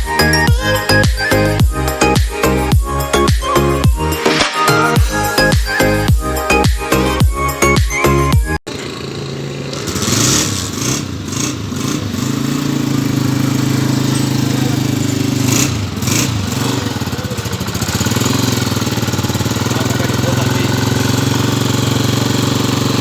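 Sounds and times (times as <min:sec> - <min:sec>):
motorcycle engine idling: 0:08.7 - 0:23.0.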